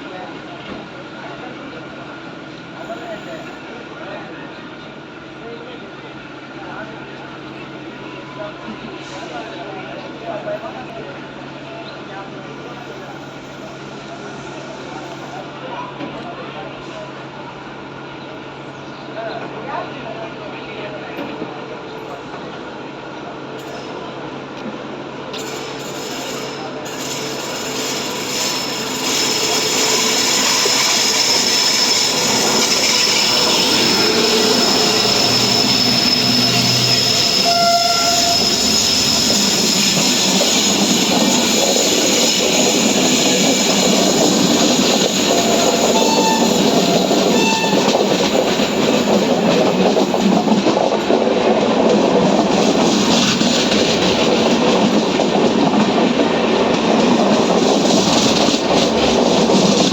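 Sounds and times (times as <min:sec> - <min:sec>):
train wheels clattering: 0:25.4 - 0:59.9
train horn blast: 0:33.9 - 0:38.6, 0:45.8 - 0:48.0.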